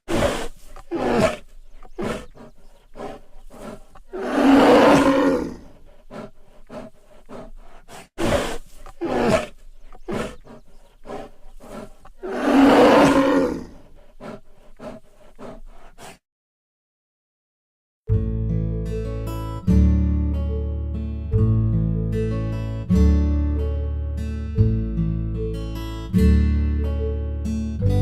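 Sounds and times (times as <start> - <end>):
bear grunting and huffing: 0.0 - 16.2
bear roaring: 0.1 - 16.2.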